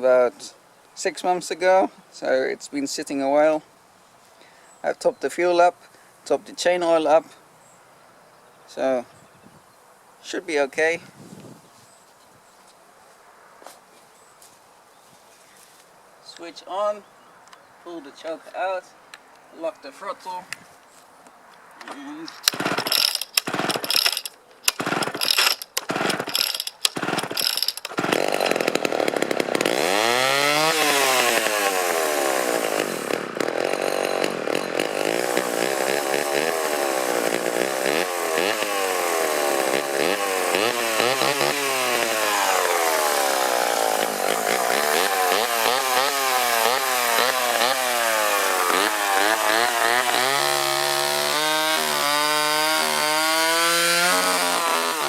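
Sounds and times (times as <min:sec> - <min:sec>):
chainsaw starting and revving: 0:22.3 - 0:55.0.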